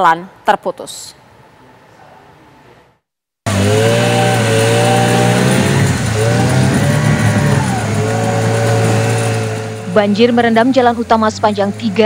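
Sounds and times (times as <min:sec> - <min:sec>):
loud vehicle engine running: 0:03.5 - 0:12.0.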